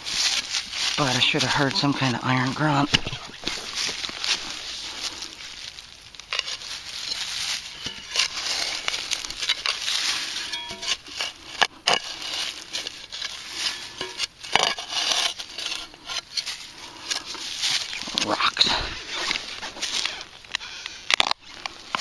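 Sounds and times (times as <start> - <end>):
digging in stony soil: 0.0 - 22.0.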